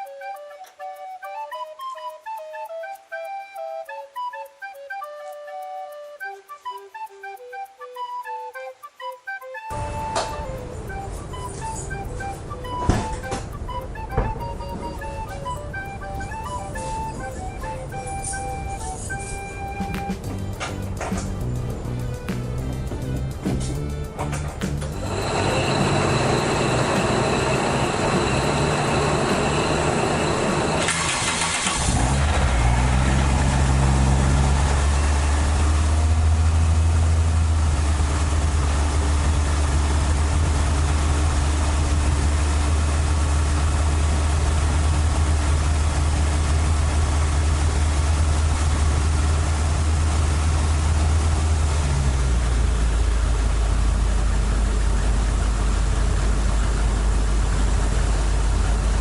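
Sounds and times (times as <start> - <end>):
engine cranking on starter: 9.7 - 21.7, 23.4 - 59.0
car engine idling: 20.3 - 59.0.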